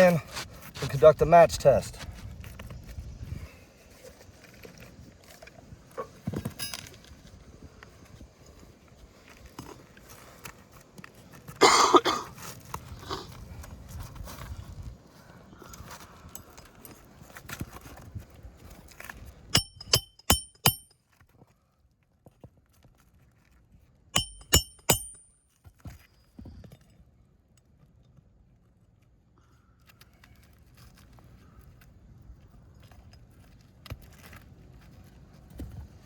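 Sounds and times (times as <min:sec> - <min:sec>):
shingles rustling and scraping: 0:00.0 - 0:11.7, 0:12.3 - 0:19.5, 0:29.8 - 0:36.0
hammer striking nails: 0:19.6 - 0:20.9, 0:24.2 - 0:25.3.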